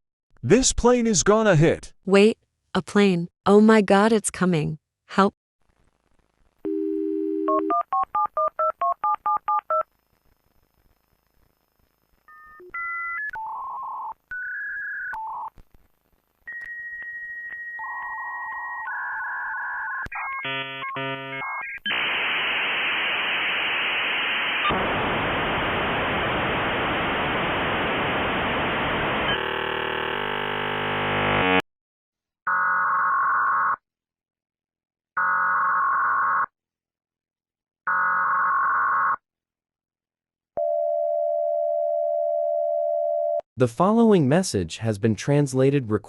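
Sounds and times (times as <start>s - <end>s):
dialling tone chords: 6.7s - 9.9s, 16.5s - 22.3s, 26.7s - 31.6s, 40.6s - 43.4s
telephone line tones: 6.7s - 9.9s, 12.2s - 15.5s, 16.5s - 22.2s, 40.6s - 43.4s.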